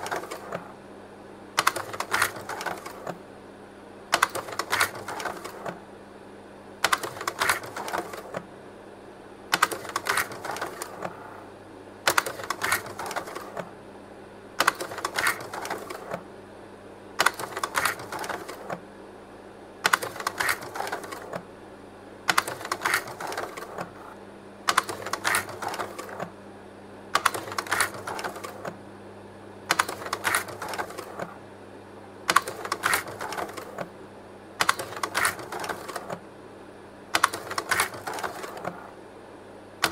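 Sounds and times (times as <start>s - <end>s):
cooling fan hum: 0.0s - 39.9s
slide projector mechanical clicks: 24.7s - 26.3s, 32.3s - 33.9s, 34.6s - 36.2s.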